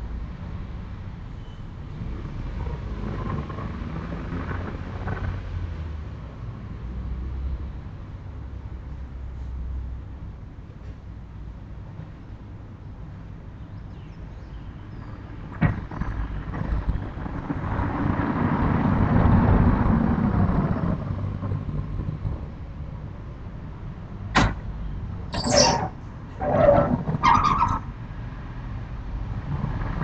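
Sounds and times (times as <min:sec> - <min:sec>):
shutters rumbling along track: 0:00.0 - 0:07.3, 0:14.9 - 0:30.0
sharp knock: 0:24.4 - 0:24.6.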